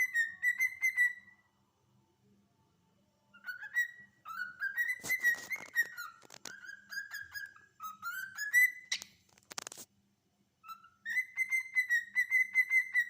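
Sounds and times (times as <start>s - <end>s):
cockatiel whistling: 0.0s - 1.5s, 3.3s - 9.1s, 10.6s - 13.0s
scratchy clicks: 8.9s - 9.9s.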